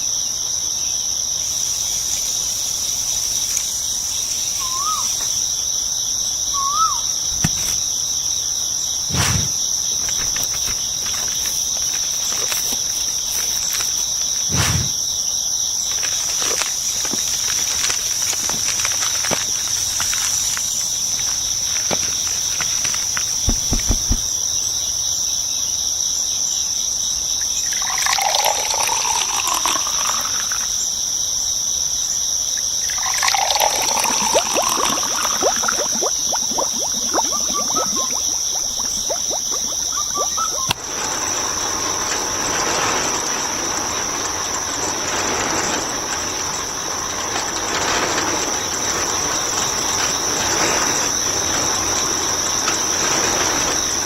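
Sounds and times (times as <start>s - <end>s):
insects droning: 0.0s - 54.0s
sharp knocks: 23.4s - 24.5s.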